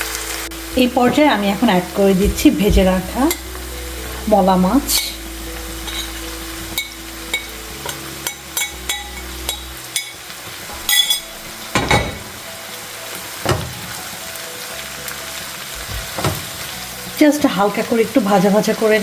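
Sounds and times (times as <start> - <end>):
food sizzling in a frying pan: 0.0 - 19.0
heavy knocks: 2.2 - 3.2, 10.7 - 12.5.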